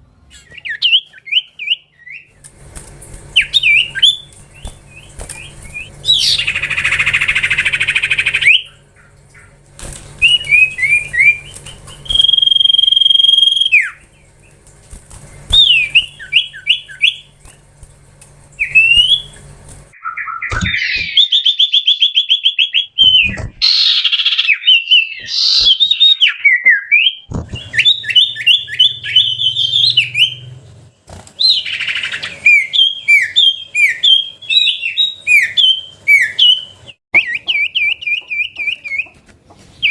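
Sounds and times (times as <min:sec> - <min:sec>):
bird singing whistles and trills: 0:00.3 - 0:02.3, 0:10.2 - 0:14.0, 0:15.5 - 0:17.3, 0:18.6 - 0:19.4, 0:20.0 - 0:30.5, 0:31.4 - 0:39.1.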